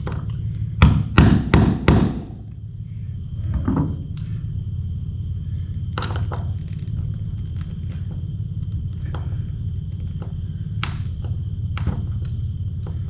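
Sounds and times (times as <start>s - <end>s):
low hum: 0.0s - 13.0s
sharp knocks on wood: 0.8s - 2.4s.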